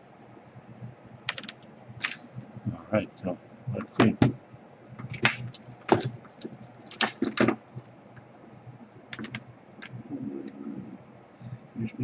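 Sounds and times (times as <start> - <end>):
laptop clicks and taps: 1.3 - 2.5, 9.1 - 10.0.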